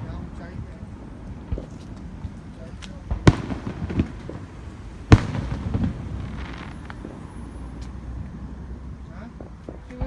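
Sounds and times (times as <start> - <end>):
firework bang: 3.1 - 7.9
rumbling tail: 3.2 - 7.4.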